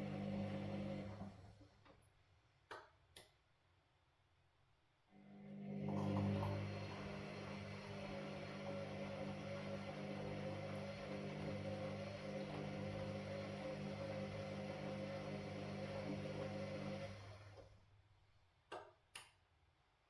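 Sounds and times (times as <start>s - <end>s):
washing machine humming: 0.0s - 1.8s, 5.4s - 17.8s.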